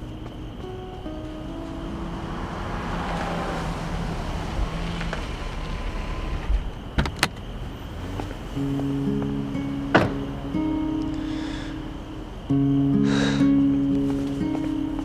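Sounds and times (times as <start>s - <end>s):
car driving past: 0.4s - 7.0s, 7.6s - 12.6s.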